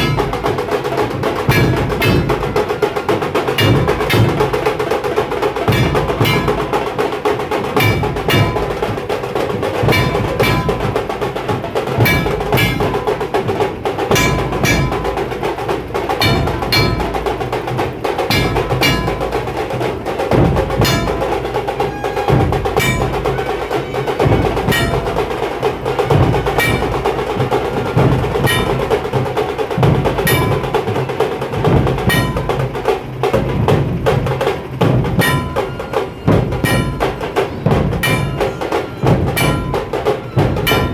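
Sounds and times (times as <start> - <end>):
dhol drums: 0.0 - 40.9
fast rolling tasha drumming: 0.0 - 40.9
ringing metallic strike: 0.0 - 40.9.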